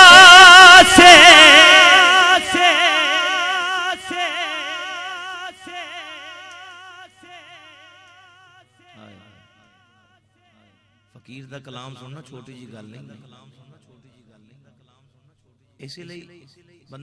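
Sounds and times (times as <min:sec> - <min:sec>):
man singing long note: 0:00.0 - 0:07.9.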